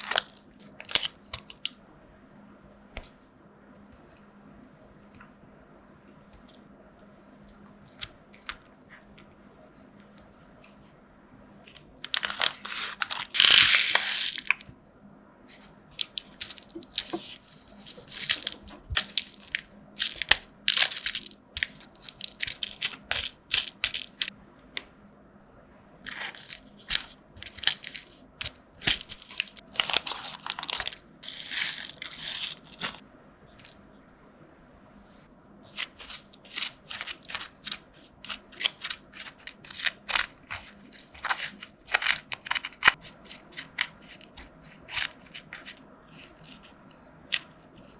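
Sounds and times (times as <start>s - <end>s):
wrapping crinkled and torn: 11.7s - 14.7s, 26.1s - 33.0s, 35.7s - 47.9s.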